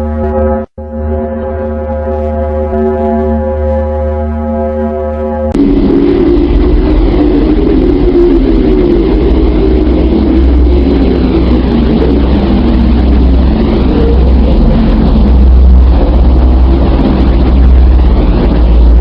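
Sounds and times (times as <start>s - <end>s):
deep low hum: 0.0s - 19.0s
loud rushing drone: 0.0s - 19.0s
dense rumbling band: 4.4s - 19.0s.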